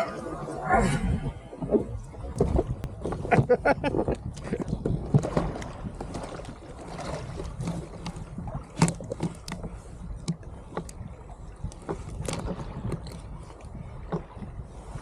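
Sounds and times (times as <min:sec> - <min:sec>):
water sloshing: 0:00.0 - 0:15.0
wind rumble on microphone: 0:00.0 - 0:15.0
knocks and clicks against kayak: 0:01.6 - 0:14.6.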